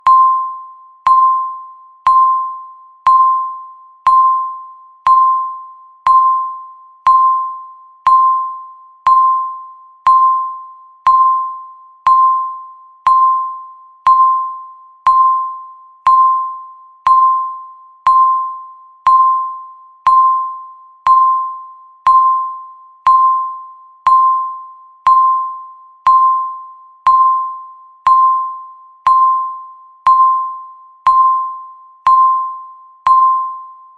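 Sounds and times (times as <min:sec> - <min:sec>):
bell-like timer ticks: 0:00.0 - 0:33.9.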